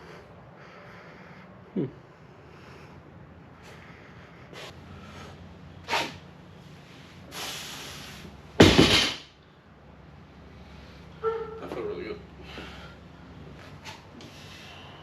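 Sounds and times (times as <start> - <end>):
man breathing hard: 0.0 - 5.6, 6.8 - 8.3, 12.3 - 13.3, 14.2 - 15.0
sharp sniffs and puffs: 5.8 - 6.2.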